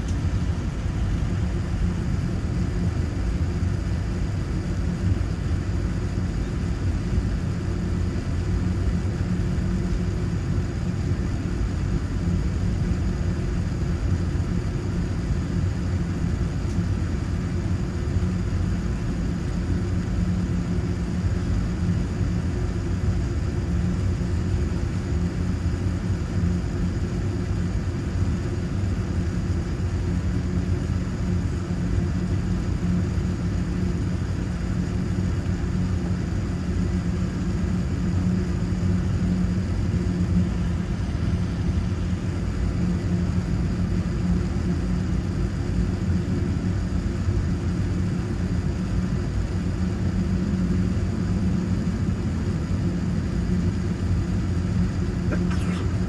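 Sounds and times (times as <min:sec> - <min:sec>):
vehicle cabin rumble: 0:55.3 - 0:56.0.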